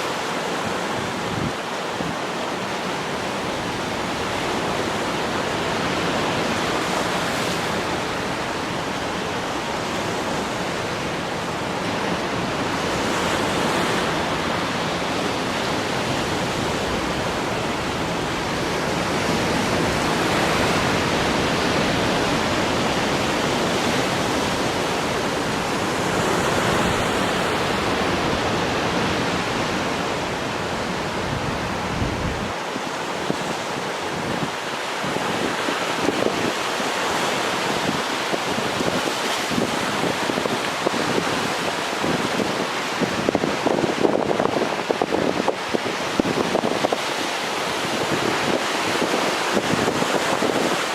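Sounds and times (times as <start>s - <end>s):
sea waves breaking on shore: 0.0s - 50.9s.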